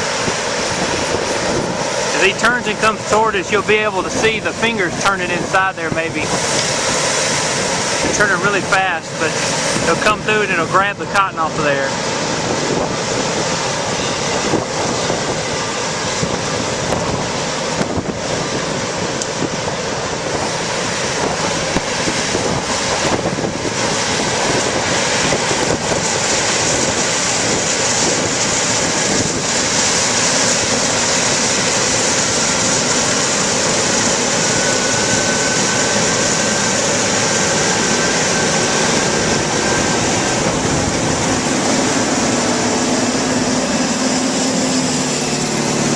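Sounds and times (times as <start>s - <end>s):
harvester machine running: 0.0s - 45.9s
faint high whine: 13.8s - 16.0s.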